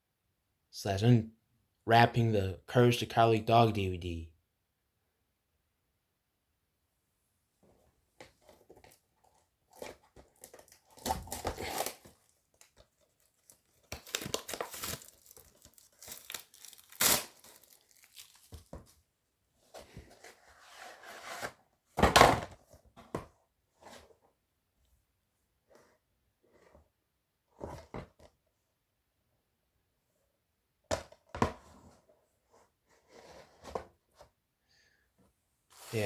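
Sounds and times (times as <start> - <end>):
plastic wrapping tearing and crinkling: 10.2 - 18.7.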